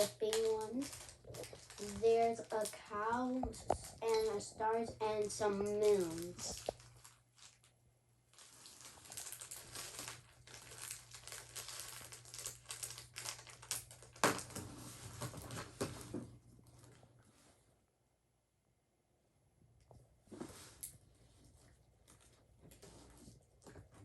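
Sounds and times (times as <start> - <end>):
plastic packaging crinkling: 0.0 - 17.0.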